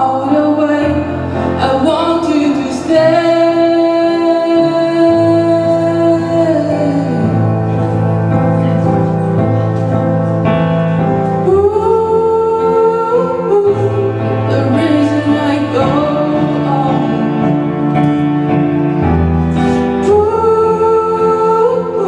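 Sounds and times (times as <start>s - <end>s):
instrumental backing track: 0.0s - 22.0s
person singing long notes: 11.4s - 18.0s.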